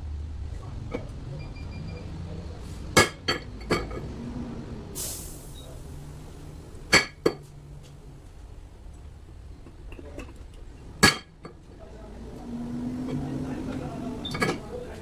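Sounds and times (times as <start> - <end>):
short hiss: 5.0 - 5.7.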